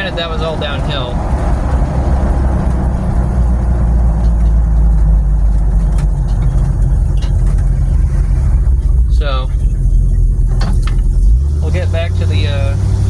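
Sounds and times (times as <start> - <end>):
engine and road drone in cabin: 0.0 - 13.0.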